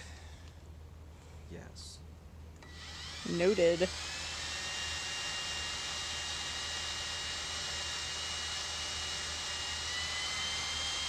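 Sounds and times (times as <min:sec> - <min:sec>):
cordless drill boring through steel: 0:02.6 - 0:11.0.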